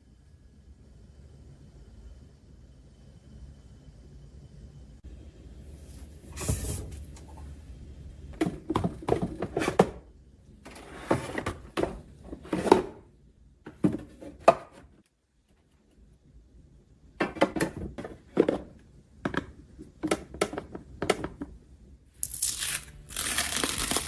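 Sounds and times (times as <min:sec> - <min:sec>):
plastic containers knocking and clattering: 0:08.4 - 0:15.0, 0:17.2 - 0:21.6.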